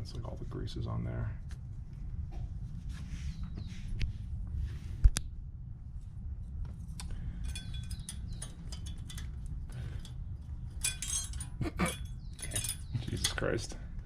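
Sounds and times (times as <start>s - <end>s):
steady low rumble: 0.0s - 14.0s
metal parts clicking and clinking: 6.8s - 13.6s.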